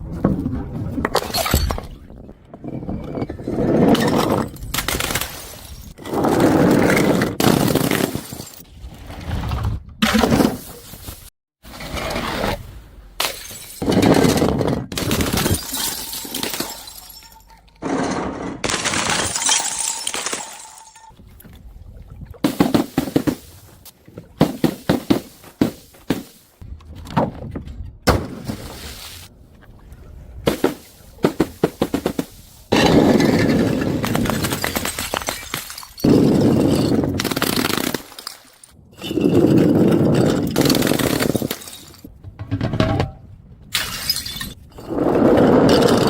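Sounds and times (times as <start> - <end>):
glass bottles smashing: 7.4 - 8.6, 13.2 - 14.0, 15.0 - 17.8, 18.6 - 21.2, 32.7 - 39.4, 40.0 - 42.1, 43.7 - 44.6
things being crushed: 13.2 - 21.2, 30.5 - 44.6.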